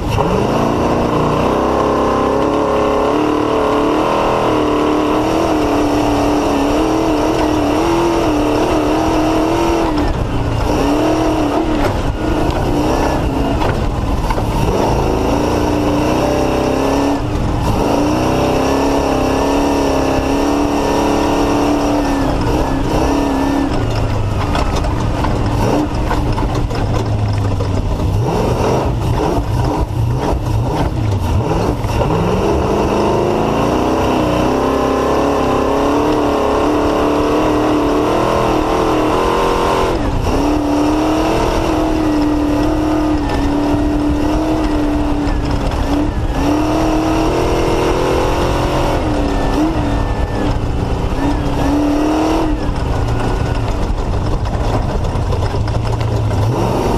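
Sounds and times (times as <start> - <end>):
constant noise: 0.0 - 56.9
race car engine revving: 0.0 - 56.9.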